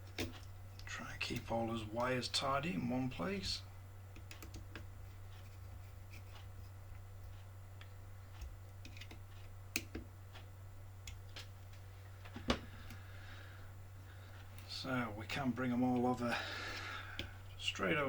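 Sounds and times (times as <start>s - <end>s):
steady low hum: 0.0s - 18.0s
light clicks and taps of parts: 4.1s - 13.0s.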